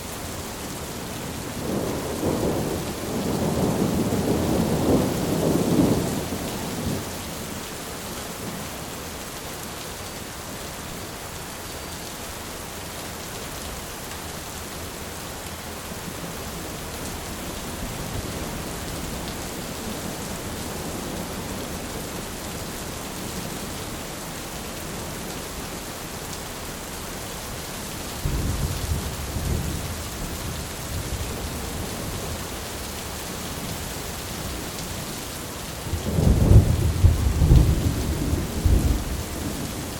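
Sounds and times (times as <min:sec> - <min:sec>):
heavy rain: 0:00.0 - 0:39.9
thunder rumbling: 0:01.6 - 0:07.0, 0:28.2 - 0:32.3, 0:35.9 - 0:39.9.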